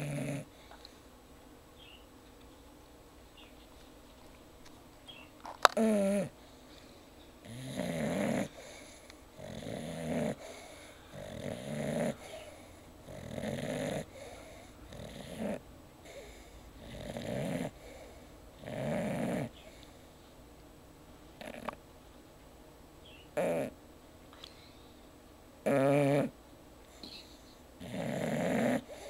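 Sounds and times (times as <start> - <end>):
pet snoring: 0.0 - 0.7, 5.7 - 6.4, 7.4 - 19.9, 21.4 - 21.8, 23.3 - 23.8, 25.6 - 26.4, 27.8 - 29.0.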